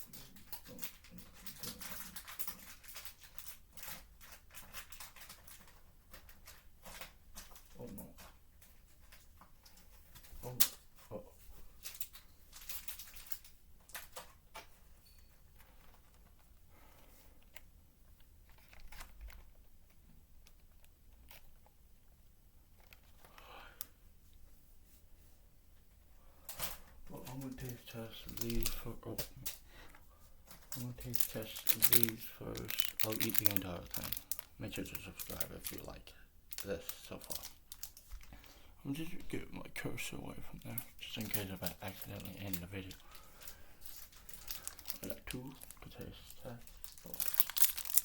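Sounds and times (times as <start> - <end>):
plastic packaging crinkling: 0.1 - 7.8, 11.8 - 14.3, 17.4 - 21.8, 27.1 - 29.8, 30.5 - 39.4, 40.5 - 48.0.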